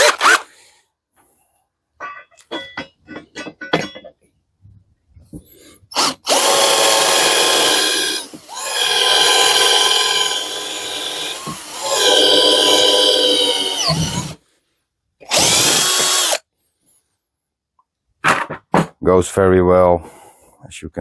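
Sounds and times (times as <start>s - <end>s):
cordless drill drilling into metal: 0.0s - 0.5s, 5.9s - 14.4s, 15.2s - 16.4s.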